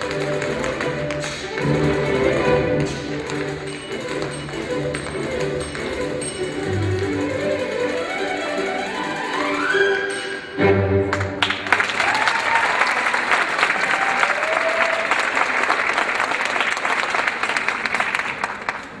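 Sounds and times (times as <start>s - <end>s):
audience applauding: 0.0s - 4.4s, 11.1s - 19.0s
short cheers: 11.5s - 16.5s.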